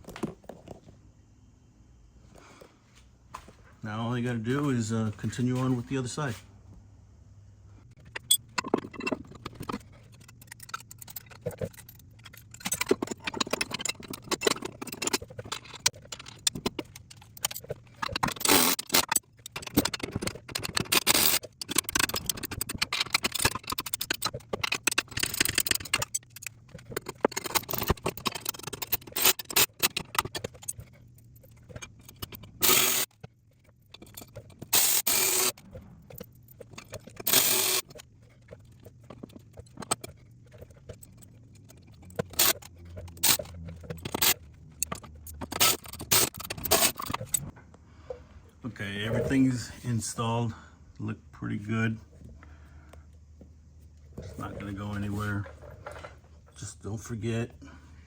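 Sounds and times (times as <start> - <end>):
metal hardware clicking and rattling: 7.9 - 47.7, 53.9 - 57.6.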